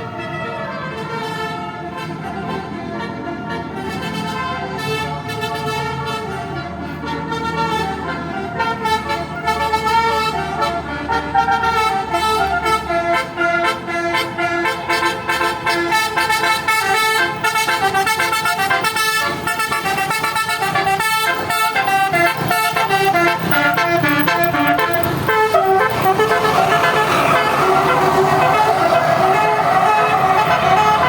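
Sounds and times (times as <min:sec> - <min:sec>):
bus multi-tone horn melody: 0:00.0 - 0:31.0.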